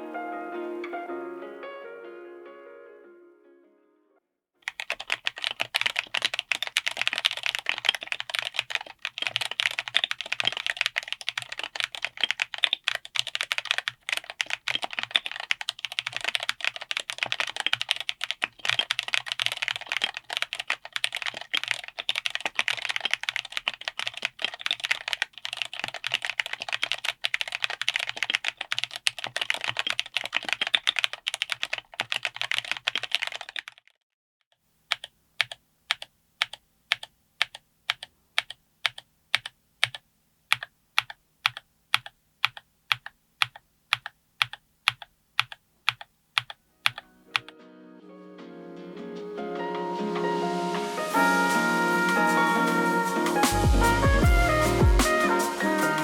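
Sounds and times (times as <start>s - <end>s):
mechanical keyboard typing: 4.6s - 33.9s, 34.9s - 47.5s.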